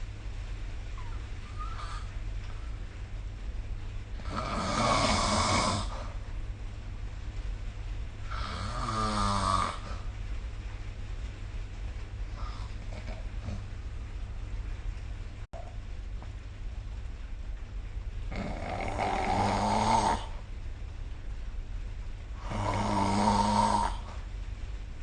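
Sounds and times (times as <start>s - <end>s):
steady low hum: 0.0s - 25.0s
person snoring: 4.2s - 6.2s, 8.3s - 10.1s, 18.3s - 20.4s, 22.4s - 24.2s.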